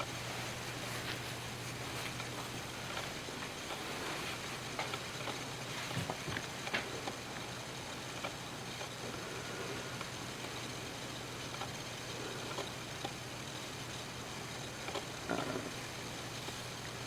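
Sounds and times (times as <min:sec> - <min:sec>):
steady hiss: 0:00.0 - 0:17.0
faint clicks and taps: 0:00.6 - 0:09.0, 0:09.9 - 0:13.2, 0:14.6 - 0:15.7.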